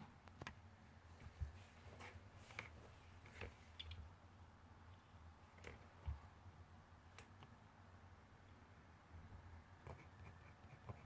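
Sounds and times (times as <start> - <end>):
low steady hum: 0.0 - 11.0
pen scratching on paper: 9.8 - 11.0.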